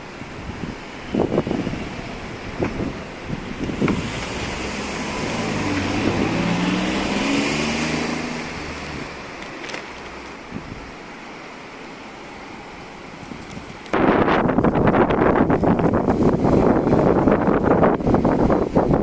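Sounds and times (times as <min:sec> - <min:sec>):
wind noise: 0:00.0 - 0:11.5, 0:12.4 - 0:19.0
vehicle engine passing: 0:01.2 - 0:10.4.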